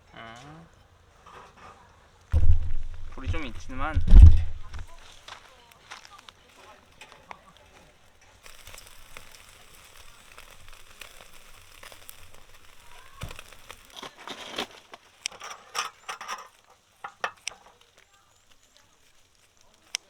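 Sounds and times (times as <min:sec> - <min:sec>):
meat sizzling on a grill: 0:00.4 - 0:20.0
sharp clicks and knocks: 0:02.4 - 0:05.0.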